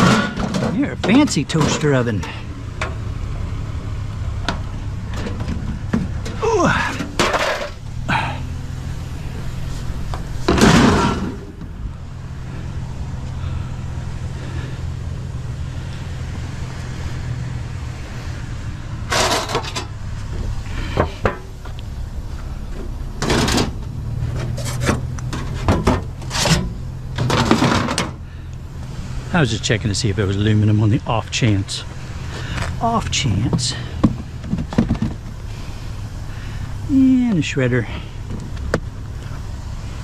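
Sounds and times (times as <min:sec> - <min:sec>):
metal and plastic scrap clunking: 0:00.0 - 0:03.0, 0:04.4 - 0:07.8, 0:09.7 - 0:11.7, 0:19.1 - 0:21.8, 0:22.7 - 0:28.2, 0:33.4 - 0:35.4
vehicle engine idling: 0:00.0 - 0:40.0.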